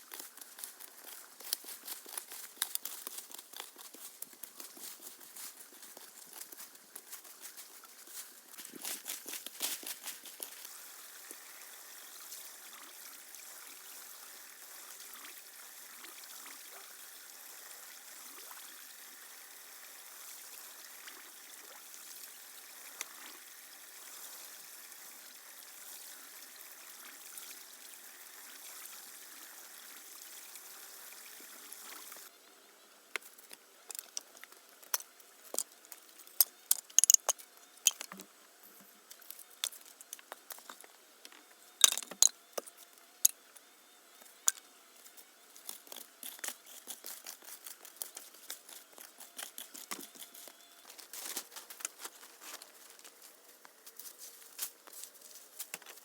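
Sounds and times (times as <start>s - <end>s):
sharp clicks and knocks: 36.4s - 38.3s.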